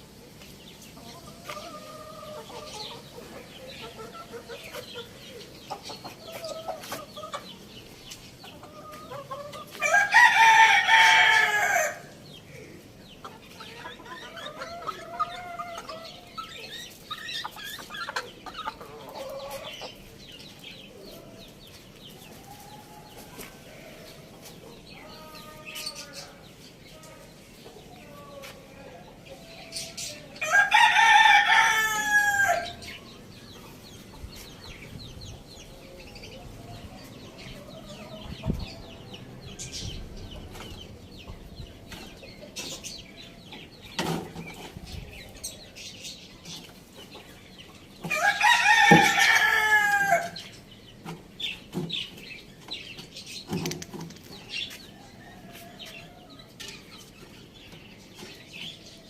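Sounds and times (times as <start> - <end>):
chickens clucking: 0.0 - 59.0
rooster crowing: 9.8 - 12.1, 30.4 - 32.8, 48.1 - 50.4.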